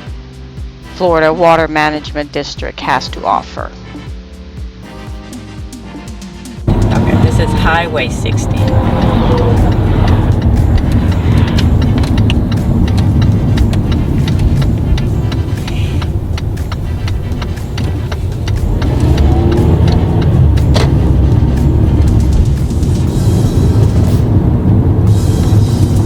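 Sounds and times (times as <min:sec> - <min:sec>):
vehicle rumble on highway: 0:06.7 - 0:26.0.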